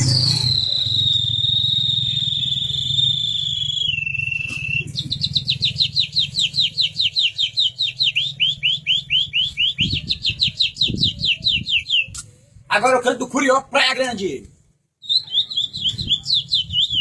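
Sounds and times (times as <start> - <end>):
person imitating birdsong trill: 4.3 - 12.2, 15.0 - 17.0.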